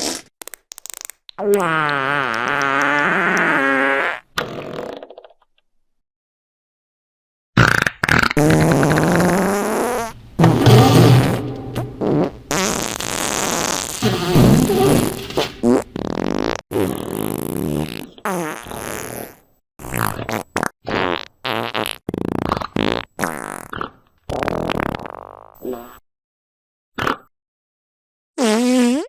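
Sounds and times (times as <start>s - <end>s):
fart sound effects: 7.6s - 19.3s.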